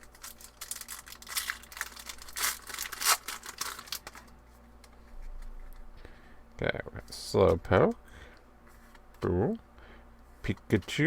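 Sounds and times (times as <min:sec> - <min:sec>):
foil wrapper tearing and crinkling: 0:00.0 - 0:04.3.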